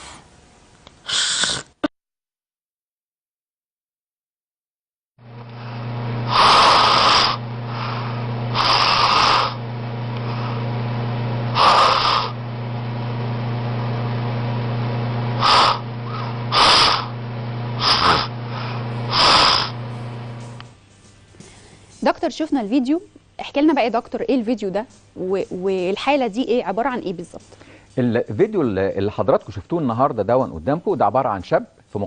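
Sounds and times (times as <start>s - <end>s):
steady low hum: 5.2s - 29.7s
man snoring: 5.5s - 10.8s, 11.5s - 12.4s, 15.3s - 17.2s, 17.8s - 20.3s.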